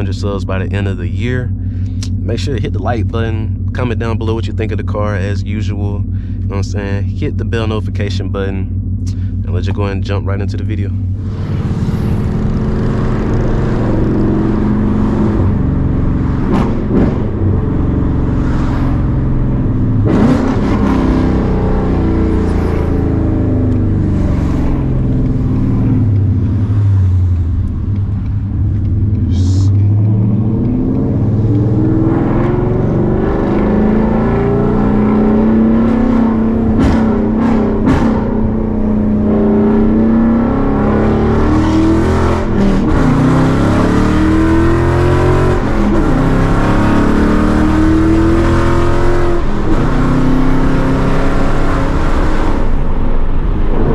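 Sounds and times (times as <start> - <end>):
car engine revving while driving: 0.0 - 53.9
exhaust cracks: 0.0 - 53.9.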